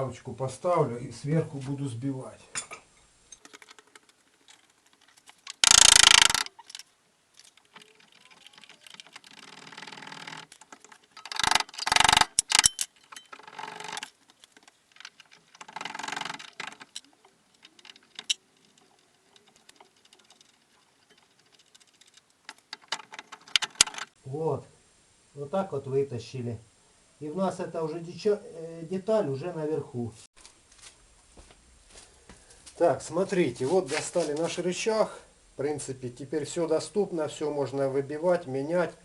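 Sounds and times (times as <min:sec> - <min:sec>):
tools and metal parts clinking: 0:02.6 - 0:24.1
loud rasping bursts: 0:05.5 - 0:06.6, 0:09.3 - 0:10.6, 0:11.2 - 0:12.6, 0:15.6 - 0:17.0.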